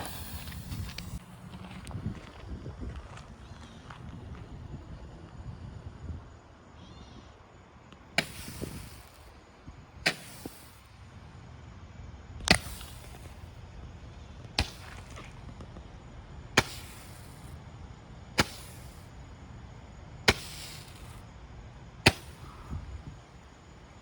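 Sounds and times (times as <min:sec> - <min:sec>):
firework sharp pops: 0:00.0 - 0:01.2, 0:08.0 - 0:09.3, 0:10.0 - 0:10.9, 0:12.4 - 0:13.6, 0:14.4 - 0:15.9, 0:16.5 - 0:17.6, 0:18.3 - 0:19.2, 0:20.2 - 0:21.3, 0:22.0 - 0:23.3
firework hiss: 0:00.0 - 0:01.9, 0:08.0 - 0:11.3, 0:12.4 - 0:15.6, 0:16.5 - 0:21.3, 0:22.0 - 0:24.0.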